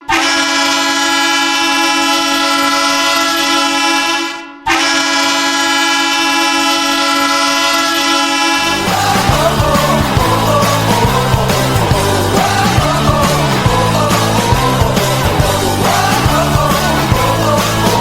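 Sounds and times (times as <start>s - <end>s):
goal horn blasts: 0.0s - 9.2s.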